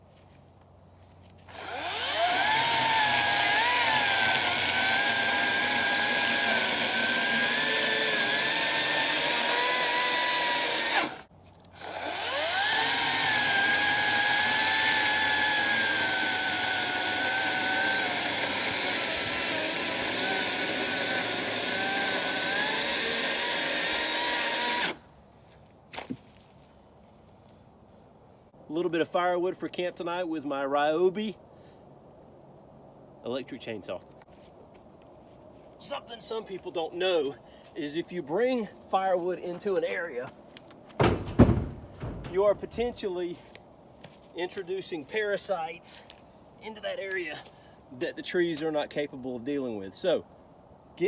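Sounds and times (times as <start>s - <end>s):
electric chainsaw cutting wood: 1.5s - 25.0s.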